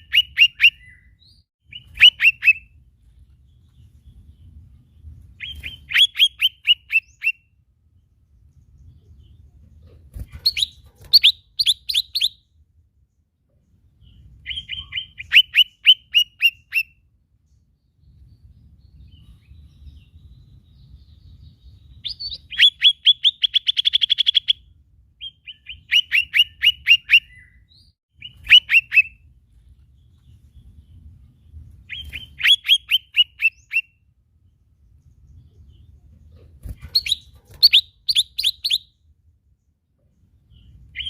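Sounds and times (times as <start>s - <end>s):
bird chirping and trilling: 0.0s - 2.8s, 3.5s - 7.6s, 10.1s - 12.5s, 14.0s - 17.0s, 18.1s - 29.3s, 30.0s - 34.1s, 35.0s - 39.1s, 40.5s - 41.0s.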